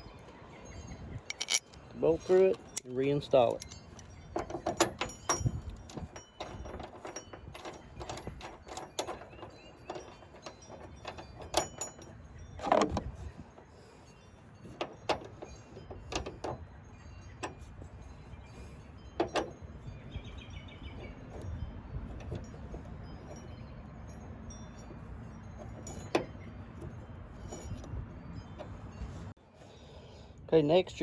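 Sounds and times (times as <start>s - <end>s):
metal tools clinking and knocking: 0.8s - 20.3s, 20.9s - 29.4s
sharp clicks and rattles: 1.2s - 13.2s.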